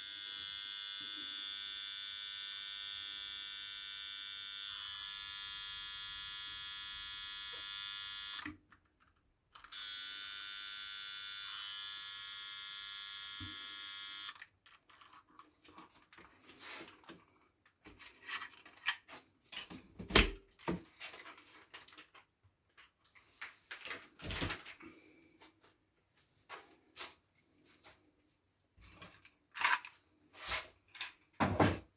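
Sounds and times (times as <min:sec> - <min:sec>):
small electric motor whining: 0:00.0 - 0:08.5, 0:09.7 - 0:14.4.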